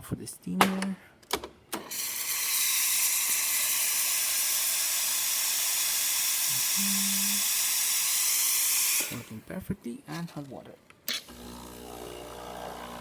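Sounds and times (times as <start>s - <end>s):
steam wand hissing: 1.9s - 9.3s.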